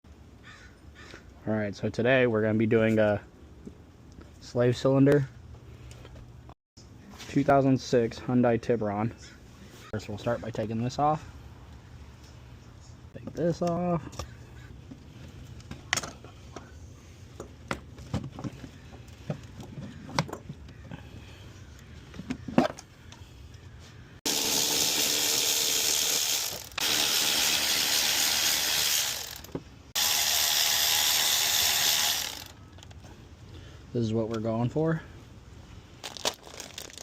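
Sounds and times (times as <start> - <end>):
ratchet wrench: 24.3 - 32.6.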